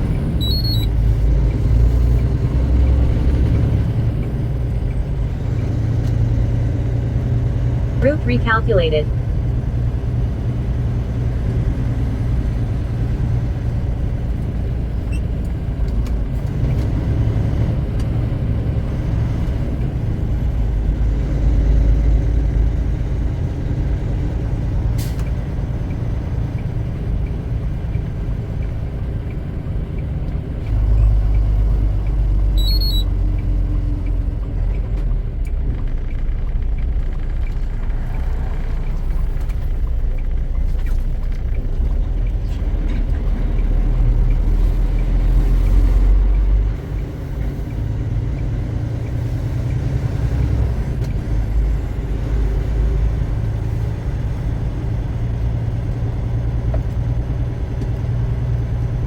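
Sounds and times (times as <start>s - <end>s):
truck engine and road noise: 0.0s - 59.0s
short high beeps: 32.6s - 33.1s.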